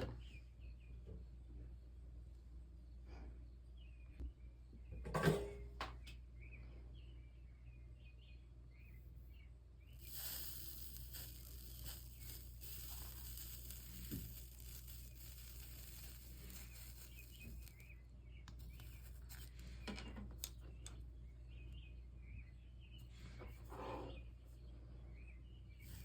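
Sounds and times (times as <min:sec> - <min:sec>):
birds chirping: 0:05.9 - 0:26.0
soldering iron sizzling: 0:10.0 - 0:20.9, 0:25.8 - 0:26.0.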